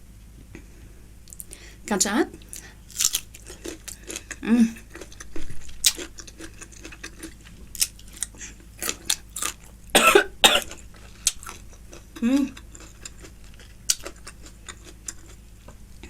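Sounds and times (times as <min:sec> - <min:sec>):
close chewing with crunches: 0:02.4 - 0:09.8, 0:10.6 - 0:15.8.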